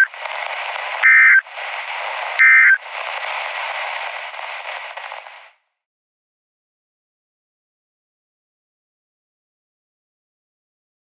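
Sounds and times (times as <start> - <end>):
radio static: 0.0 - 5.6
two-pitch digital data tone bursts: 1.0 - 1.4, 2.4 - 2.8.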